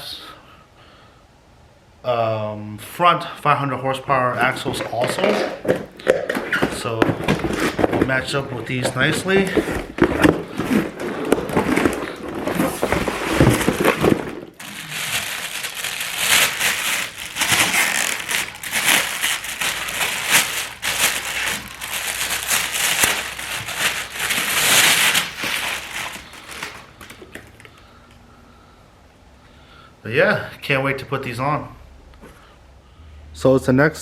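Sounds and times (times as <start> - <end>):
packaging crinkling: 4.1 - 28.0.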